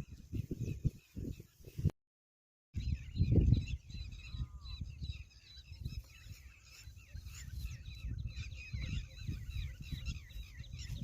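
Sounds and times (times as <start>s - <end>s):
small birds chirping: 0.0s - 1.9s, 2.8s - 11.0s.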